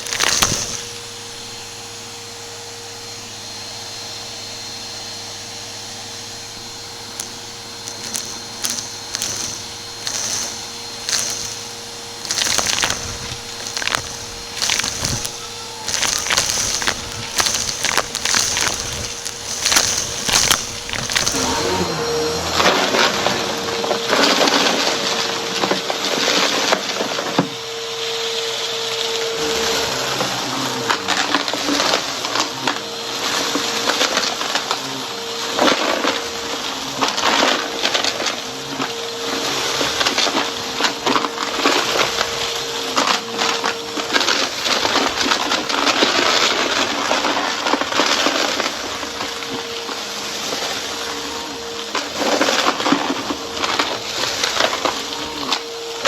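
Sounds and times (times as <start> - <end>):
debris crackling in vacuum: 0.0 - 56.0
vacuum cleaner motor whine: 0.0 - 56.0.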